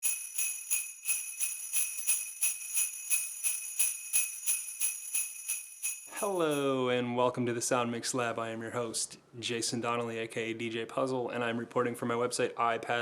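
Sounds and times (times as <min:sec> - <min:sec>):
sleigh bells jingling: 0:00.0 - 0:06.8.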